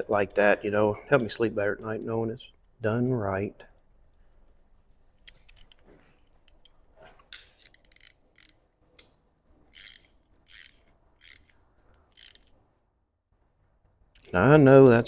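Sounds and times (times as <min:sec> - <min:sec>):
ratchet wrench ratcheting: 0:07.3 - 0:08.7, 0:09.6 - 0:12.6.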